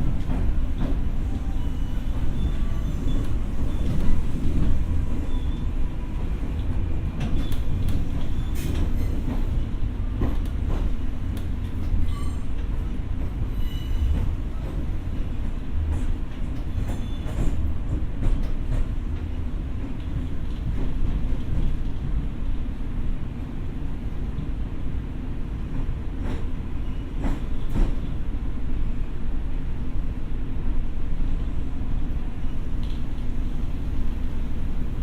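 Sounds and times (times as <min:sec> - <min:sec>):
train wheels rumbling on rail: 0:00.0 - 0:35.0
faint high squeals: 0:01.2 - 0:04.4, 0:05.0 - 0:05.8, 0:12.0 - 0:12.6, 0:13.5 - 0:14.4.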